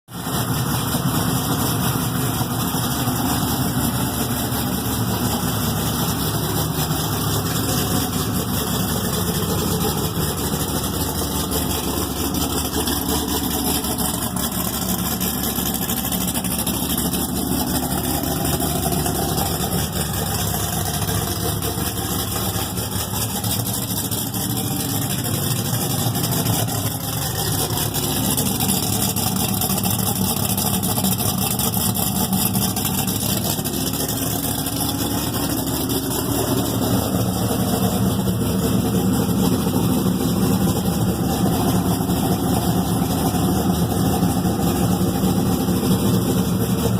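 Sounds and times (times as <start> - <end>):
engine idling: 0.0 - 46.9.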